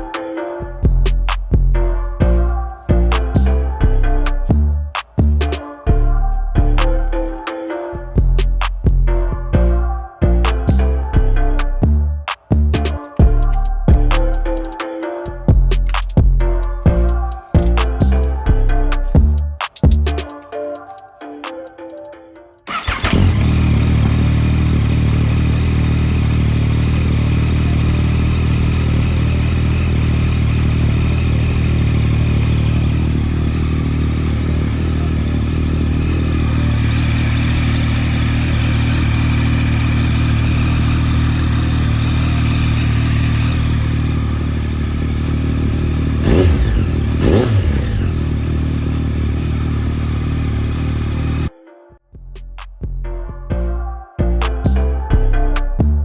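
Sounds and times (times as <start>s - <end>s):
motorcycle engine starting and idling: 22.7s - 51.5s.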